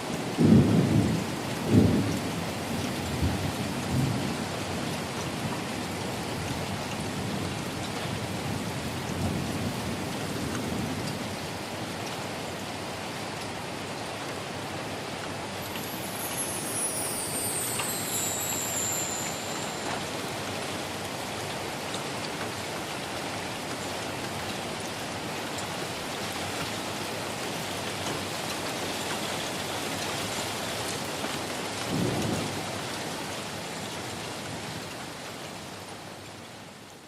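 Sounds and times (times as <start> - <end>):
low rumble of thunder: 0.3 - 5.5, 31.8 - 33.2
heavy rain hissing: 12.4 - 35.8.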